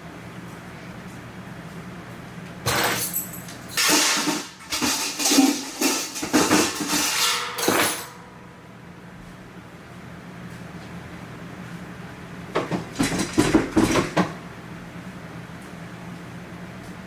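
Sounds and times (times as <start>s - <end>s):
pots and pans clattering: 2.7s - 8.2s, 12.6s - 14.4s.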